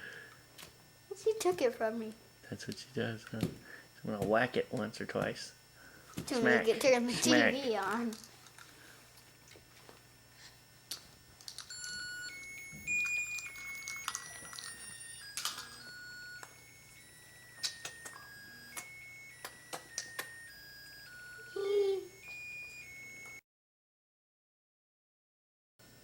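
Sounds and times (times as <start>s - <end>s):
toy remote electronic beeps: 11.7s - 23.4s.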